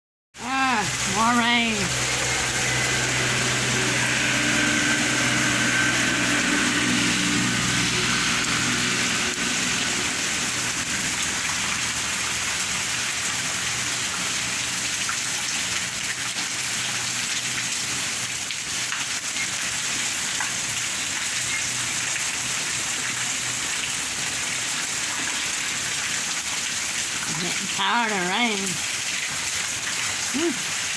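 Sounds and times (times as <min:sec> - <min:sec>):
heavy rain pattering: 0:00.4 - 0:30.9
low engine hum: 0:00.9 - 0:13.8.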